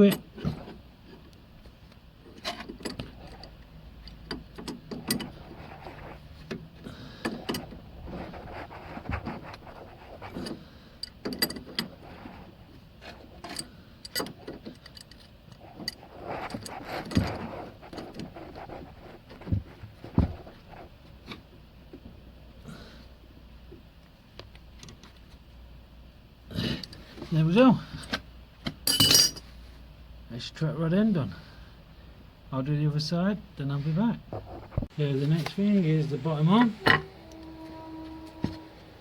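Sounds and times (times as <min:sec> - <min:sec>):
spanner clicking and clinking on bolt: 0:02.4 - 0:05.4, 0:11.0 - 0:11.9, 0:28.8 - 0:29.4.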